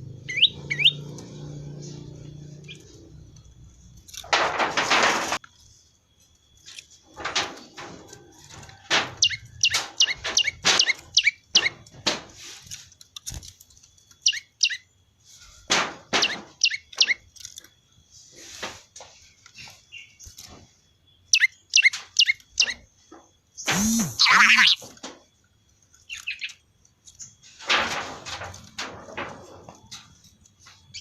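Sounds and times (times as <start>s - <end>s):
prinia chirping: 0.0s - 4.2s, 9.2s - 11.9s, 13.5s - 15.2s, 16.2s - 18.3s, 19.2s - 25.0s, 25.6s - 27.4s
sharp thumps: 23.7s - 24.8s.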